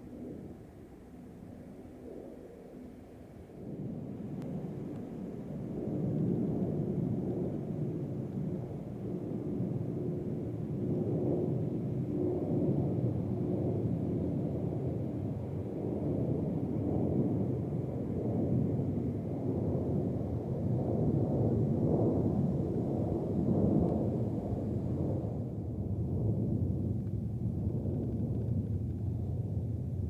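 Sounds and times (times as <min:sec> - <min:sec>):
distant jet engines rumbling: 0:00.0 - 0:15.7.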